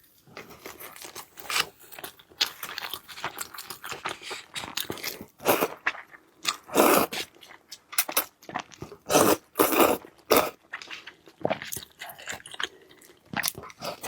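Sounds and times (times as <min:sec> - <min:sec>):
person chewing crunchy food: 0:00.0 - 0:14.0.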